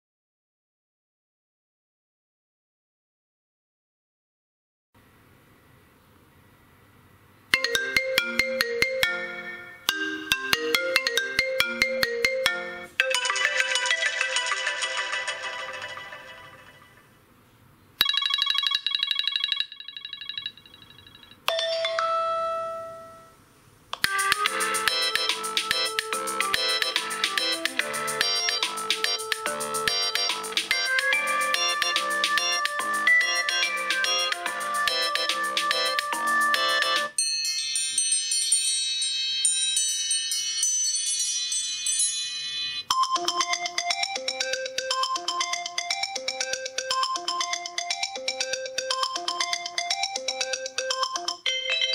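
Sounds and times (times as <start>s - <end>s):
high chiming ringtone melody: 7.6s - 17.1s, 18.0s - 23.4s, 24.0s - 51.9s
lower repeating ringtone notes: 7.6s - 17.1s, 18.0s - 23.4s, 24.0s - 51.9s
rapid high electronic beeps: 18.0s - 20.9s, 24.5s - 37.1s.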